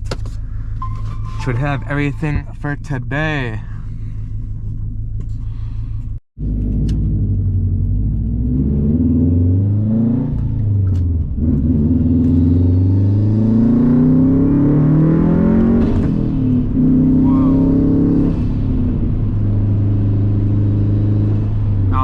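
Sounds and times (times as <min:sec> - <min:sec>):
car engine accelerating hard: 0:06.4 - 0:22.0.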